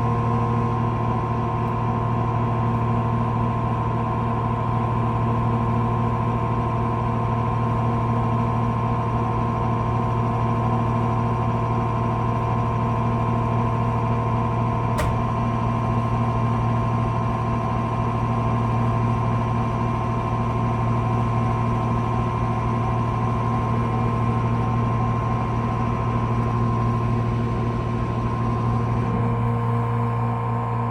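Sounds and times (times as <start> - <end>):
sharp click: 15.0 - 15.4.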